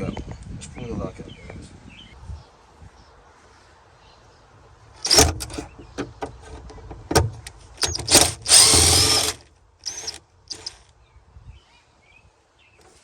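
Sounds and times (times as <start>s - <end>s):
power drill bursts: 5.0s - 5.6s, 7.8s - 10.8s.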